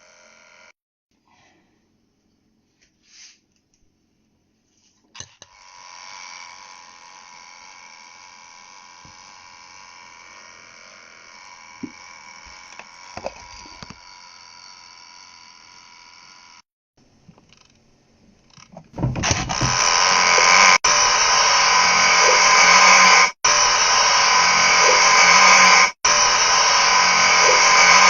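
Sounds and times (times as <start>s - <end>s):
grinder motor whining: 0.0s - 0.8s, 5.4s - 16.7s, 18.6s - 28.0s.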